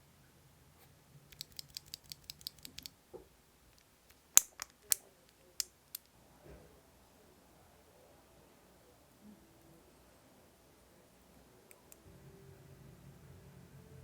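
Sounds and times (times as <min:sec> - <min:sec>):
mechanical keyboard typing: 0:01.3 - 0:02.9.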